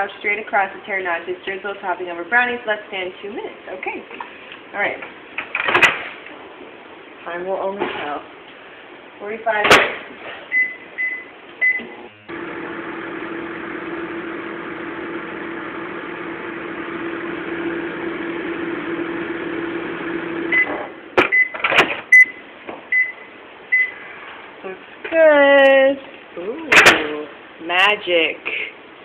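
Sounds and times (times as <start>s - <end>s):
microwave keypad beeps: 10.6s - 11.9s, 21.3s - 24.0s
microwave oven humming: 11.2s - 21.4s.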